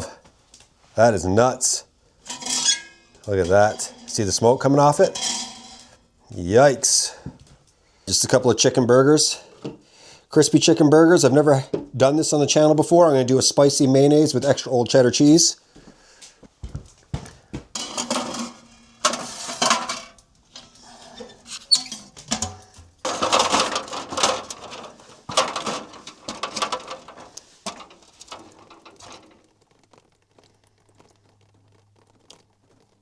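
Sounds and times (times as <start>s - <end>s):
food preparation clatters and rustles: 2.2s - 6.0s, 15.8s - 33.0s.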